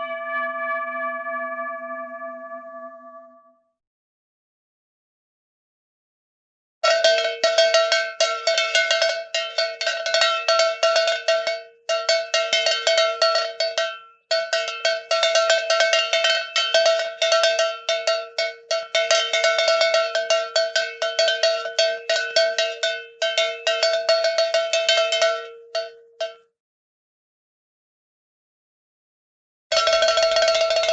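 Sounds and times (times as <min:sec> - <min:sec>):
low ringing tone: 0:00.0 - 0:03.6
metal bell struck rapidly: 0:06.8 - 0:26.4, 0:29.7 - 0:30.9.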